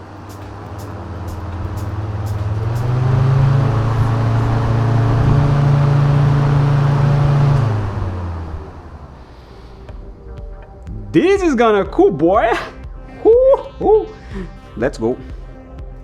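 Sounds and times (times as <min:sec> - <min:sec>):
radiator cooling fans humming: 0:00.0 - 0:11.8.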